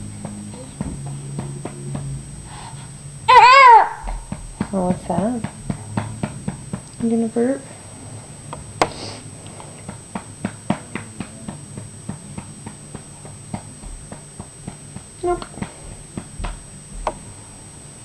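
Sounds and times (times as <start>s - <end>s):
baby vocal sound: 0.4s - 1.2s.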